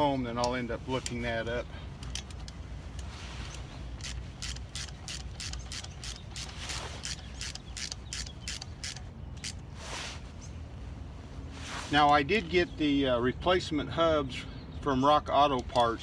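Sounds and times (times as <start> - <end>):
ratchet clicking: 2.0 - 9.6.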